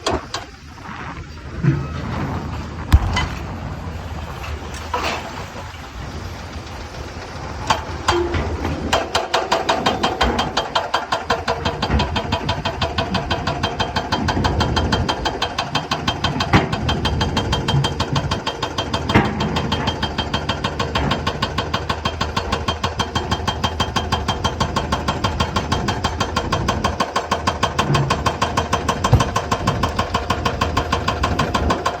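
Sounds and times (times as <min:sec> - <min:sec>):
diesel engine pulsing: 0:00.5 - 0:10.6.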